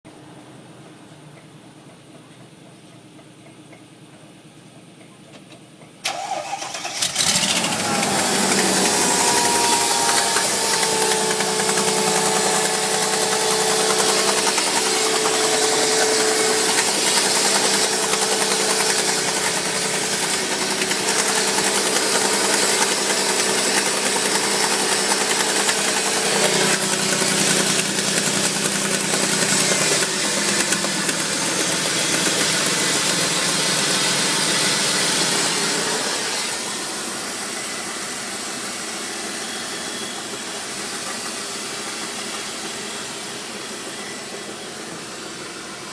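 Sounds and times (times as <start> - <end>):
engine cranking and starting: 6.0 - 37.2
engine idling with loud rattle: 6.0 - 45.9.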